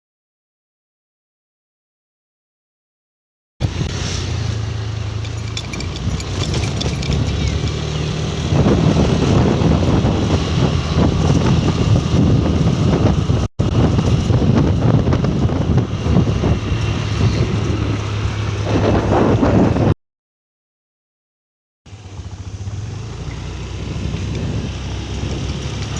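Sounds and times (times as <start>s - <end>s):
vehicle moving along a road: 3.6s - 20.0s, 21.9s - 25.9s
wind rumble on microphone: 3.6s - 20.0s, 22.1s - 25.9s.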